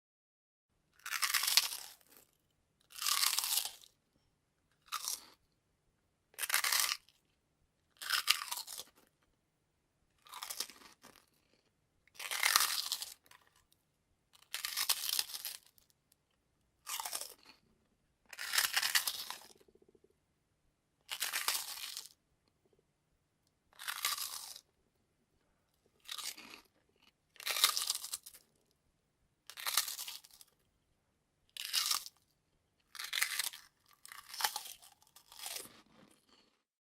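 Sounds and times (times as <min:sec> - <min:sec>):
crunching crispy crackers: 0:01.0 - 0:04.0, 0:04.8 - 0:05.4, 0:06.4 - 0:09.3, 0:10.1 - 0:19.9, 0:21.0 - 0:22.2, 0:23.7 - 0:24.8, 0:25.7 - 0:28.8, 0:29.5 - 0:30.6, 0:31.5 - 0:36.6.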